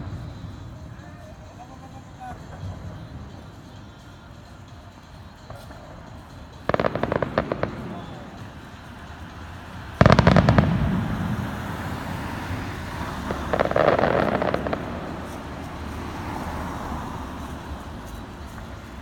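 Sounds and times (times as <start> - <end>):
firework crackling: 0.0 - 19.0
firework burst: 6.6 - 8.7, 10.0 - 15.6.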